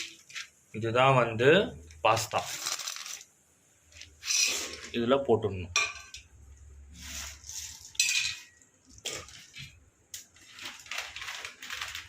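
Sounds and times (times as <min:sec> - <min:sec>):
utensils clinking on cooking pot: 0:05.8 - 0:06.3, 0:07.6 - 0:09.7.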